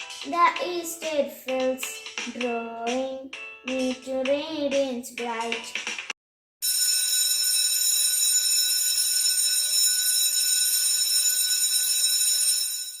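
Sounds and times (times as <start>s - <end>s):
high alarm-like ringing tones: 6.6s - 13.0s.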